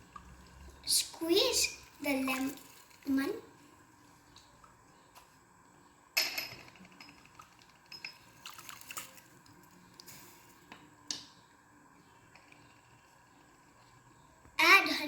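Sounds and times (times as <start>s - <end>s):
juice dripping into water: 0.0s - 5.2s, 7.2s - 11.4s.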